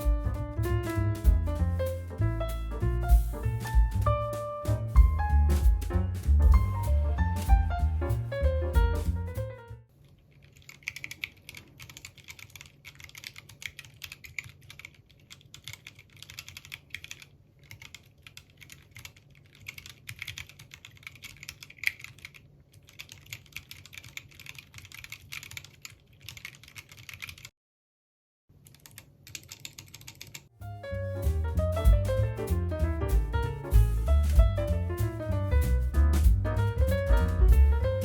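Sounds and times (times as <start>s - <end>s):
mechanical keyboard typing: 10.5s - 27.5s, 28.6s - 30.5s.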